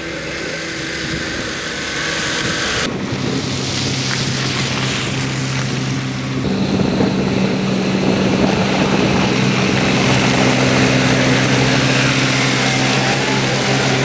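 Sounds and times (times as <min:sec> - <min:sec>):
diesel engine running: 0:00.0 - 0:14.0.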